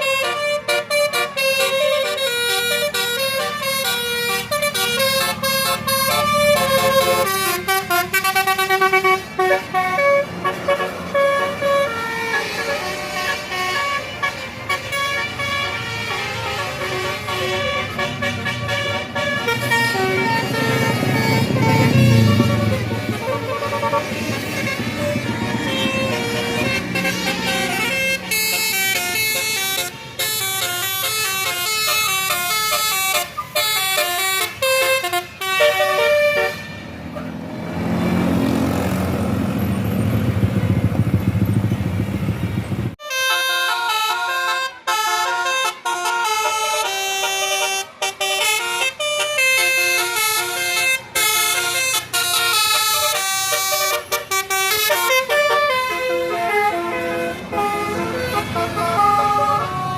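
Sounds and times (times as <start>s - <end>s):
bus horns playing melodies: 0.0s - 40.7s, 42.9s - 59.9s
diesel bus engine running: 0.0s - 43.0s.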